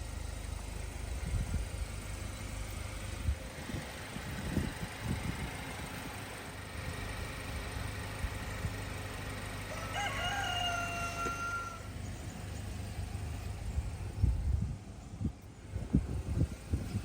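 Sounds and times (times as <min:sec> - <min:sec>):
car engine idling: 0:00.0 - 0:17.0
rooster crowing: 0:09.6 - 0:11.9.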